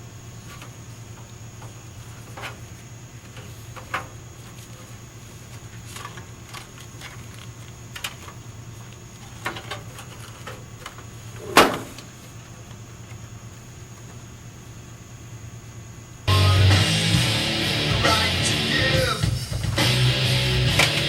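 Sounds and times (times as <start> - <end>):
steady low hum: 0.0 - 20.8
loud knock: 11.5 - 12.0.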